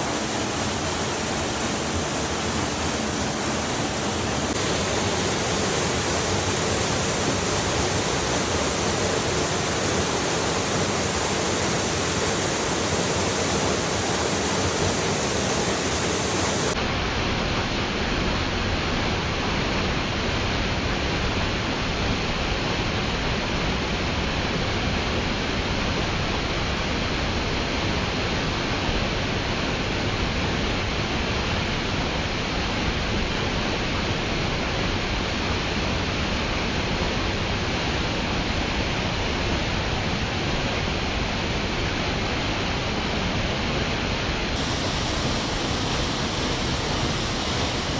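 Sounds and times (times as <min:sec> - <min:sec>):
waterfall pouring: 0:00.0 - 0:16.8, 0:44.6 - 0:47.9.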